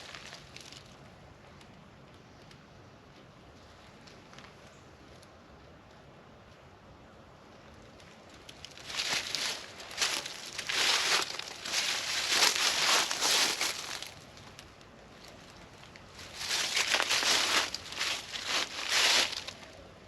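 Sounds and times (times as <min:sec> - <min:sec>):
crinkly rustling: 0:08.0 - 0:19.8.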